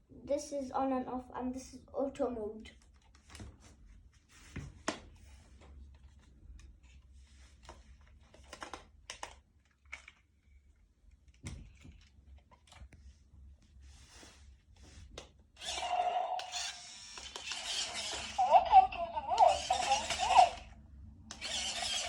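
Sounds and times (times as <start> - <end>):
soft rustles: 12.7 - 15.2
toy clicks: 15.6 - 22.0.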